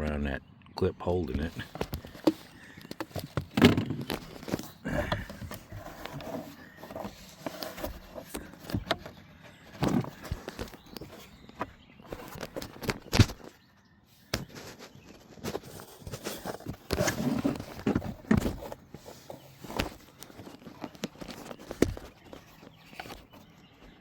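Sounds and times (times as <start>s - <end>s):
clicks and knocks of plastic latch: 1.6s - 13.5s.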